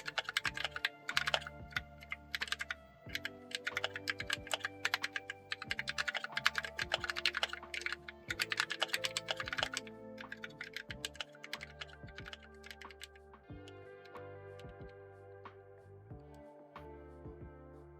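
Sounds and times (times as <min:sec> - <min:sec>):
mechanical keyboard typing: 0:00.0 - 0:13.2
background music: 0:00.0 - 0:17.9.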